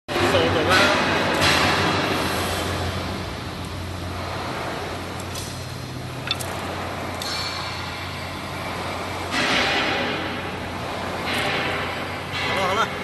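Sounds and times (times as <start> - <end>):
machine humming: 0.1 - 13.0.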